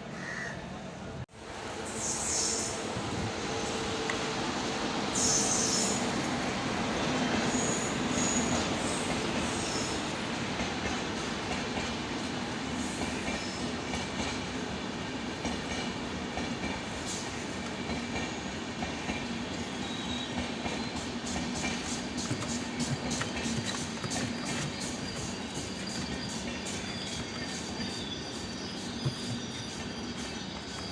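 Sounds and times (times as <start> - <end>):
train rumbling on rails: 0.6 - 30.9
high wheel squeals: 19.5 - 30.9.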